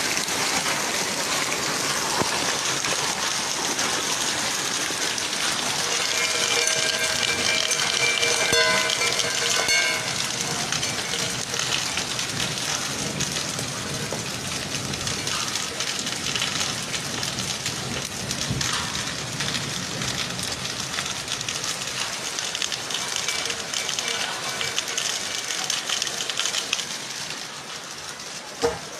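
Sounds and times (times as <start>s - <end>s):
rain and hail pattering: 0.0s - 28.9s.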